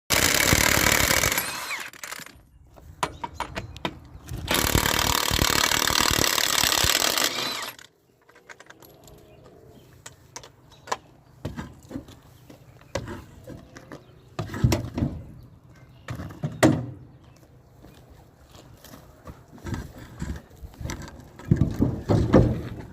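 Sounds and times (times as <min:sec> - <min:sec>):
loud power tool: 0:00.1 - 0:02.3, 0:04.5 - 0:07.9
metal knocks and clanks: 0:19.6 - 0:22.9.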